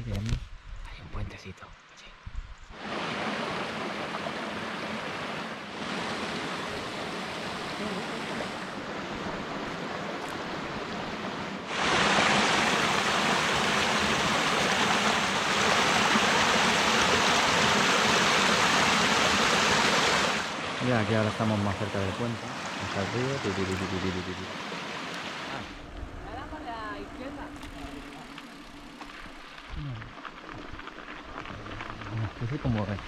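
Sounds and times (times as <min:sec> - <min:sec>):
river rushing over rocks: 0:10.5 - 0:25.8.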